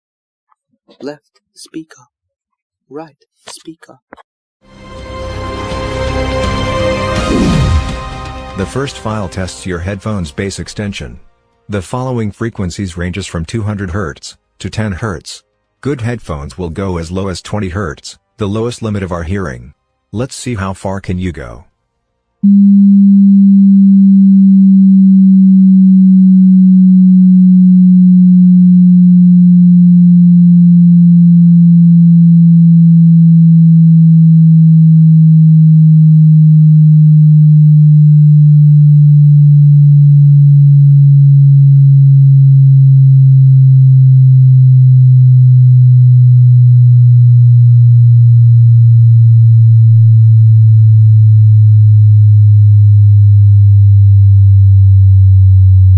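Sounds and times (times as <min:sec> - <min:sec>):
sine tone sweeping downward: 0:07.0 - 0:10.2, 0:22.4 - 0:55.9.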